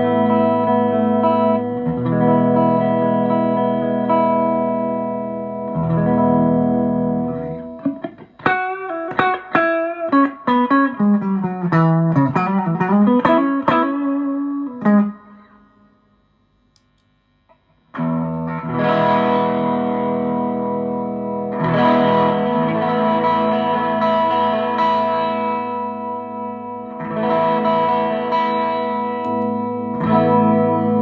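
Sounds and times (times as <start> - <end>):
distorted electric guitar: 0.0 - 31.0.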